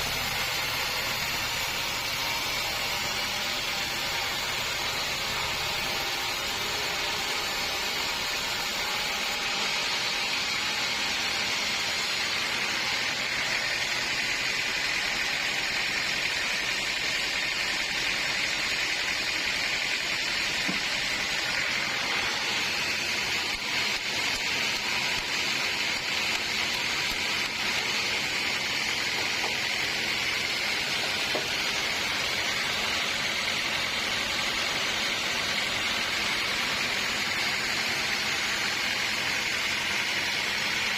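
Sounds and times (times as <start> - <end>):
saw cutting through log: 0.0 - 40.9.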